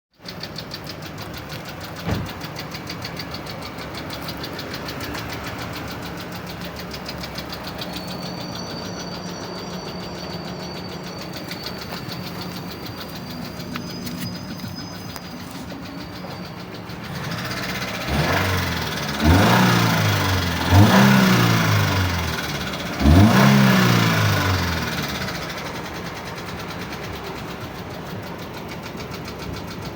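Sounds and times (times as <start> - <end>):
car engine with ticking knock: 0.1 - 29.9
thump: 2.0 - 2.4.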